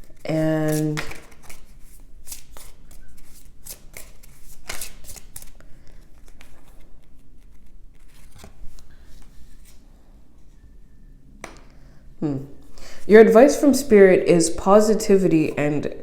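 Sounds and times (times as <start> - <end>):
cards being shuffled: 0.0 - 9.8.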